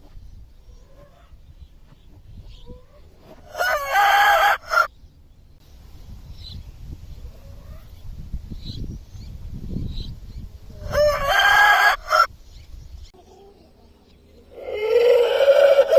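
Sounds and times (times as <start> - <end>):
rooster crowing: 3.5 - 4.9, 10.9 - 12.3, 14.6 - 15.9.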